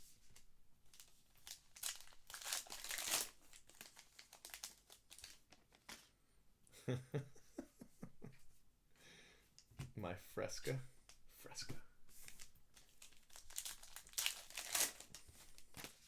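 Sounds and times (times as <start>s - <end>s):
card pack wrapper tearing: 1.4s - 6.0s, 12.4s - 16.0s.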